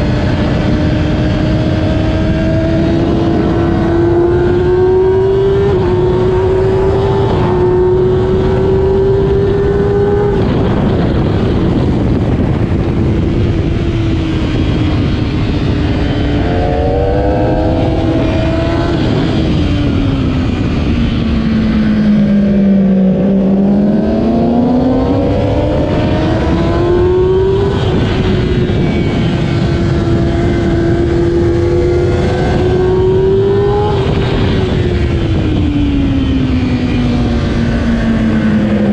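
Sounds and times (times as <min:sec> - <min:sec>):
motorcycle engine at race pace: 0:00.0 - 0:38.9
wind rushing: 0:00.0 - 0:38.9.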